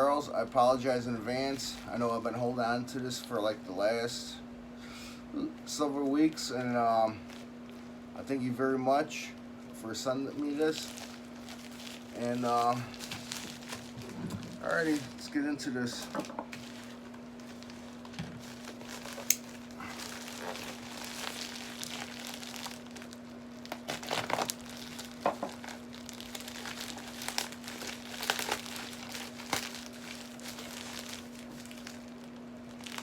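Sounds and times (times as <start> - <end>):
packing material crinkling: 5.7 - 8.0, 10.1 - 33.0.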